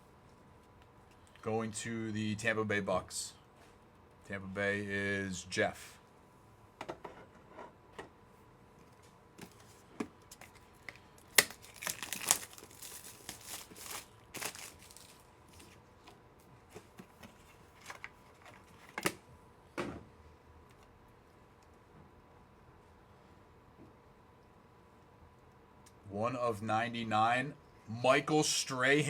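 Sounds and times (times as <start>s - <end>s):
plastic packaging crinkling and tearing: 10.3s - 15.8s.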